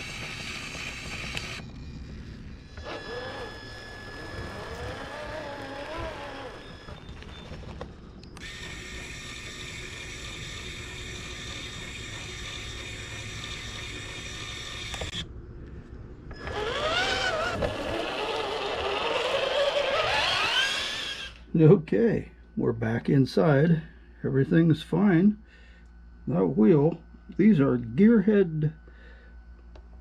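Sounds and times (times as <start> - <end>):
electric motor and gears whining: 0.0 - 21.8.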